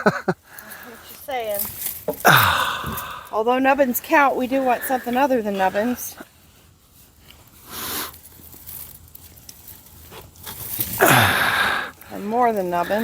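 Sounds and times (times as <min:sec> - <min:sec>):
tool scraping through soil: 0:03.6 - 0:11.0
small crunches and clicks: 0:07.2 - 0:12.1.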